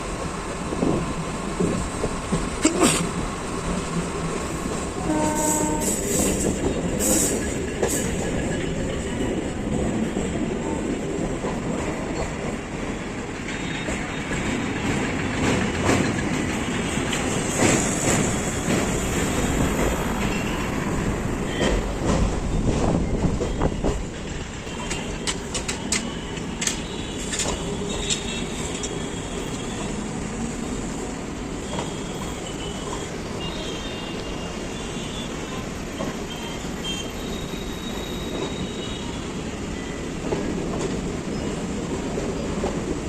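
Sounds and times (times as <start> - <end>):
train rumble and wheel clatter: 0.0 - 43.0
high wheel squeal: 31.6 - 40.0.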